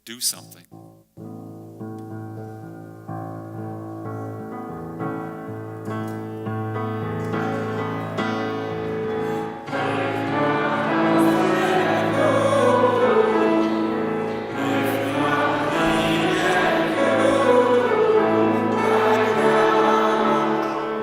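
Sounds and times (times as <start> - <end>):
choir singing: 7.2 - 21.0.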